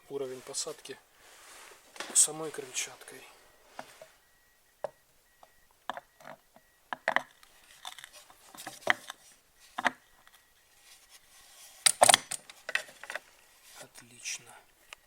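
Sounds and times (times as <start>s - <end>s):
plastic knocks and clicks: 4.8s - 9.2s.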